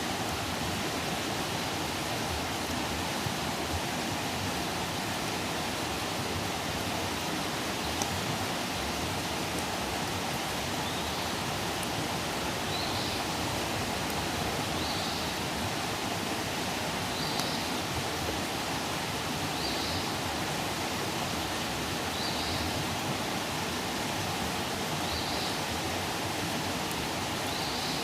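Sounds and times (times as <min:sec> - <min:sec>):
campfire hissing: 0:00.0 - 0:28.0
fire crackles: 0:06.4 - 0:14.8.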